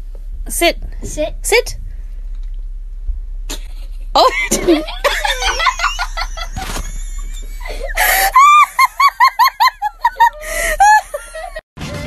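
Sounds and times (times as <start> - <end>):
high-pitched voice laughing: 3.5 - 11.6.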